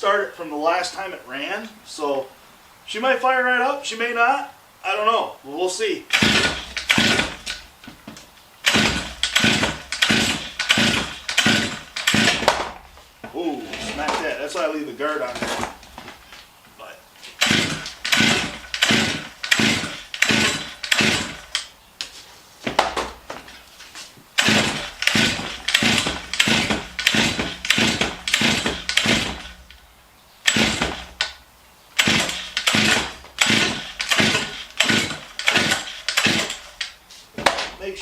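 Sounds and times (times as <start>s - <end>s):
chainsaw starter cord pulls: 6.1s - 12.8s, 13.6s - 16.2s, 17.2s - 21.7s, 24.4s - 29.8s, 30.4s - 31.4s, 32.0s - 37.8s
chainsaw engine turning over: 6.1s - 16.3s, 17.2s - 21.7s, 24.4s - 29.8s, 30.4s - 31.4s, 32.0s - 37.8s.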